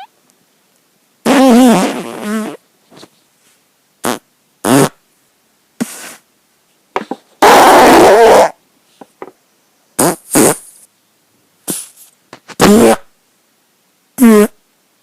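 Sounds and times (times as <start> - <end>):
person farting: 1.2 - 2.6, 4.0 - 5.0, 7.0 - 8.6, 10.0 - 10.7, 12.5 - 13.1, 14.2 - 14.6.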